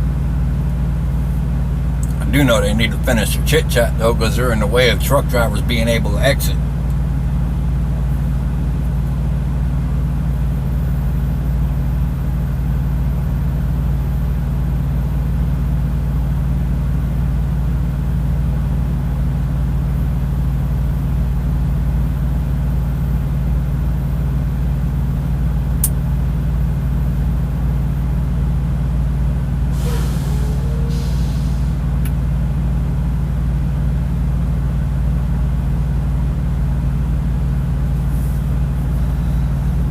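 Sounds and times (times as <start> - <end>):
diesel truck engine idling: 0.0 - 39.9
brief click: 25.8 - 26.0.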